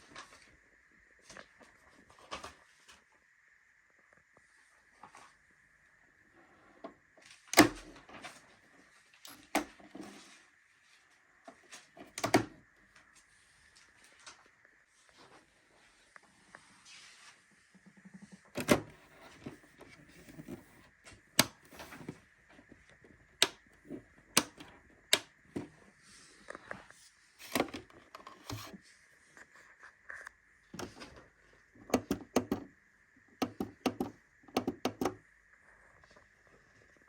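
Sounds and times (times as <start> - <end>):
hard objects clicking and knocking: 23.4 - 25.7, 32.0 - 32.7, 33.4 - 35.2.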